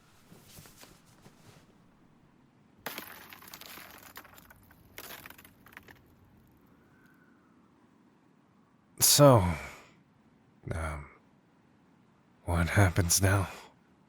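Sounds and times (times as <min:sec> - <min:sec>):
rustling and crunching on ice: 0:02.9 - 0:06.6.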